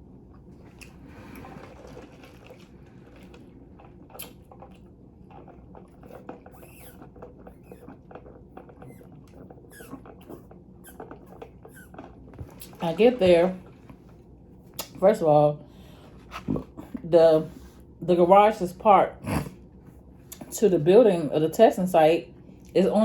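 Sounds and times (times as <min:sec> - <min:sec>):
chewing with wet mouth clicks: 0:00.2 - 0:12.8, 0:13.7 - 0:15.0, 0:19.9 - 0:20.5.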